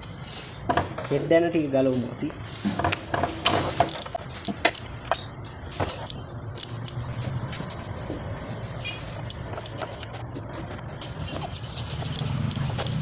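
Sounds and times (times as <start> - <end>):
wrench clicking and clinking: 2.6 - 5.2, 5.8 - 7.7, 9.2 - 10.1, 11.0 - 13.0.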